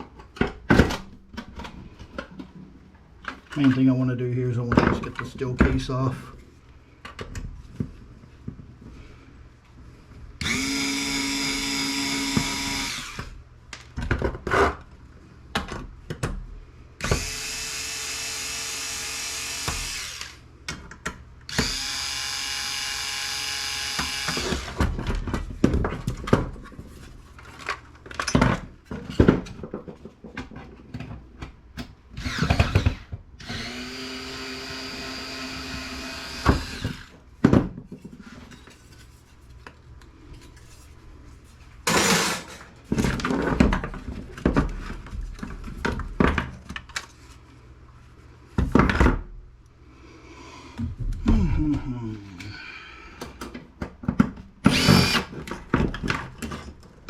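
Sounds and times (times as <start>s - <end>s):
power drill spinning: 10.4s - 13.4s, 17.0s - 20.4s, 21.5s - 24.8s, 32.2s - 37.2s, 54.7s - 55.4s.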